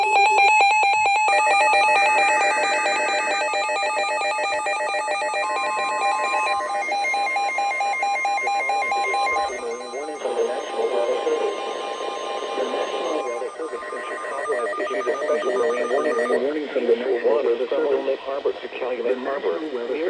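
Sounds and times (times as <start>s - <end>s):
warbling alert tones: 2.0s - 16.4s.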